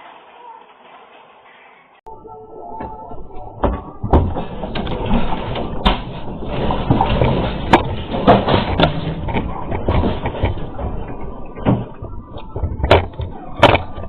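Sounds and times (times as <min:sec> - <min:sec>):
loose objects rattling: 0:03.6 - 0:14.0
sharp knocks and bangs: 0:03.6 - 0:14.0.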